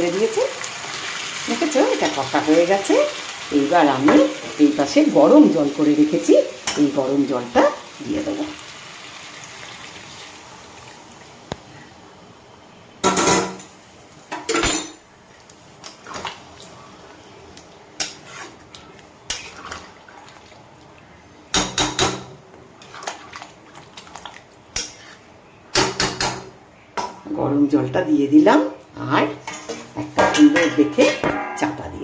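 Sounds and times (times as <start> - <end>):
metal cookware clattering: 29.4 - 32.0.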